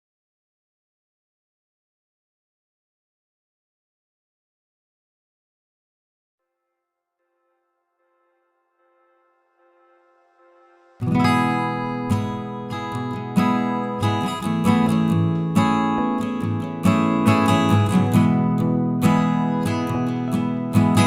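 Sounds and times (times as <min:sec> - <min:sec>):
strummed guitar chords: 0:09.6 - 0:21.0.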